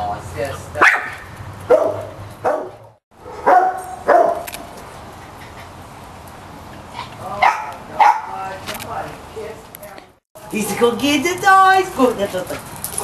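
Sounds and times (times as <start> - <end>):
small dogs barking: 0.8 - 4.5, 7.0 - 8.4.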